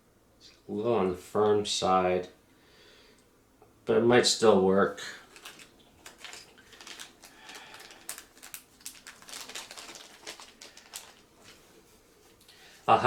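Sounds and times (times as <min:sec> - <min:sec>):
plastic packaging rustling: 0:05.0 - 0:12.5.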